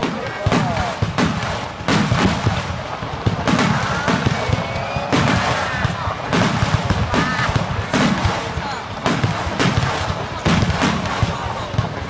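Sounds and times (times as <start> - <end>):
whistling firework shells: 0.0 - 8.4
firework bursts and booms: 0.0 - 12.0.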